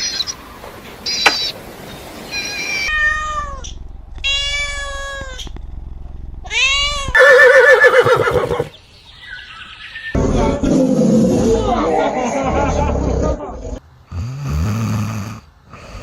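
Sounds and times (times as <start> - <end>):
cat meowing: 2.4 - 5.4.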